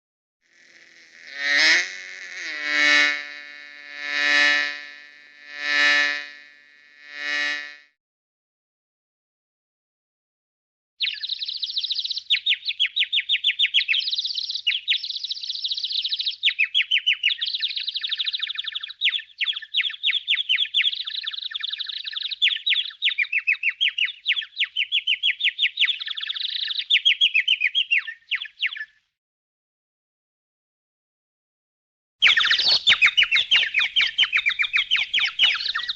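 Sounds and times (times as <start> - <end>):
bird chirping trill: 11.0 - 29.0, 32.2 - 35.9.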